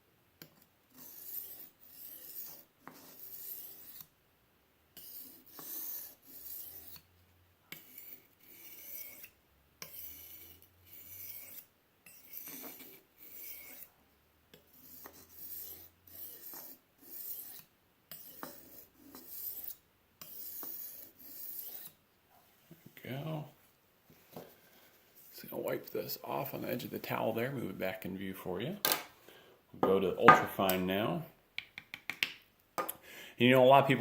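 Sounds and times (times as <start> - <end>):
knife scraping on sharpening stone: 0.9 - 4.1, 5.0 - 7.1, 7.7 - 13.9, 14.6 - 22.0.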